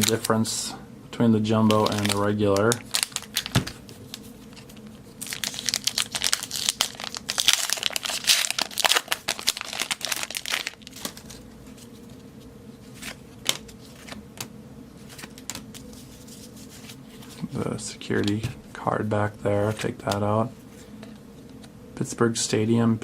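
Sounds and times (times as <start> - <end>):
foil wrapper crinkling: 0.0 - 0.5, 1.6 - 11.9.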